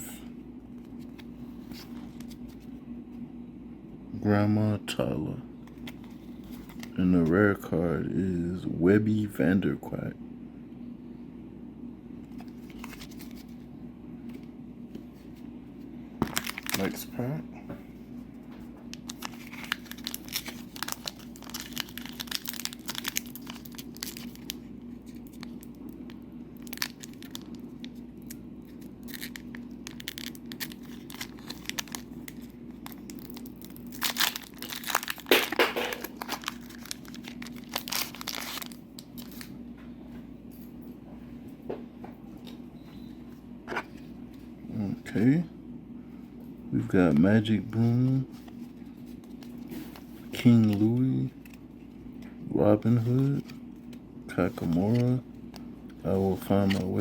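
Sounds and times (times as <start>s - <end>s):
wrapper crinkling and tearing: 16.2s - 17.2s, 18.9s - 39.5s.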